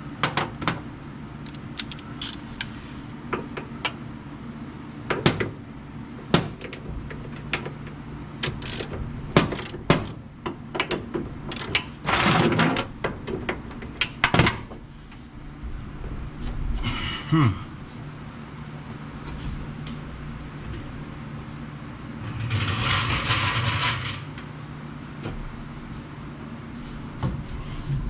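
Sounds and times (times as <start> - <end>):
steady low hum: 0.0 - 28.0
metallic clicks of hand tools: 1.5 - 2.4, 8.4 - 8.9.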